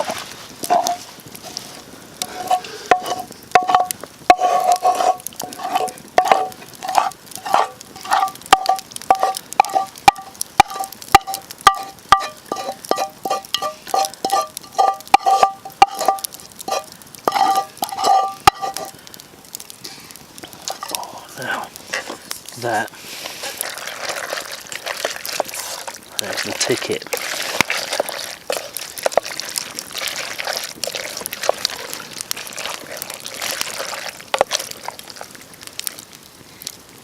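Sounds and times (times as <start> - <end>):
faint sizzle: 0.0 - 37.0
utensil clinking against pan: 2.4 - 18.9.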